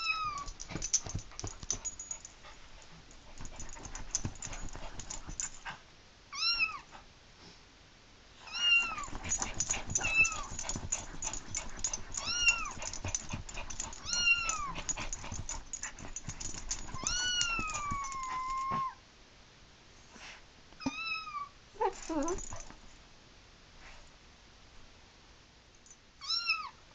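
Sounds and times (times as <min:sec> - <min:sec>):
rapid clicking and scratching: 0:00.4 - 0:02.3, 0:03.1 - 0:05.7, 0:08.9 - 0:18.6
kitten mewing ringtone: 0:12.2 - 0:12.7.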